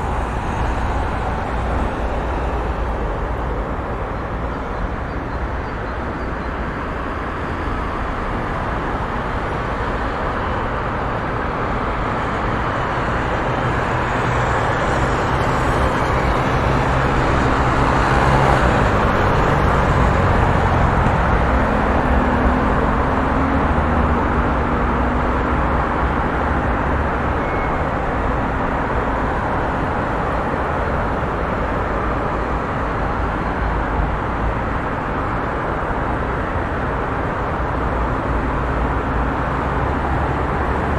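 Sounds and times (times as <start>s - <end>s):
busy road traffic: 0.0s - 40.9s
engine hum: 0.0s - 40.9s.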